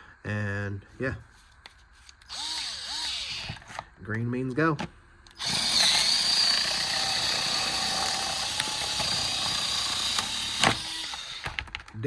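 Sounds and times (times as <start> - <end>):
battery package cutter whining: 2.2 - 3.9, 5.3 - 12.0.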